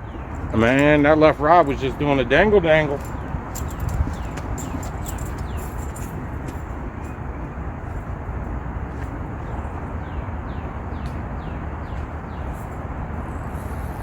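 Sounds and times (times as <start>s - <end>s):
low outdoor rumble: 0.0s - 14.0s
bird chirping: 3.0s - 6.0s.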